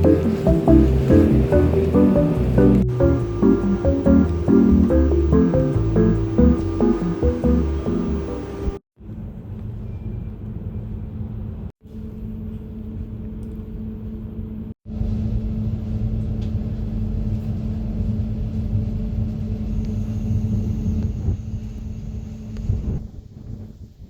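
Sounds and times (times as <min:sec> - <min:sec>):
moving vehicle rumble: 0:00.0 - 0:08.8
steady hum: 0:00.0 - 0:08.8.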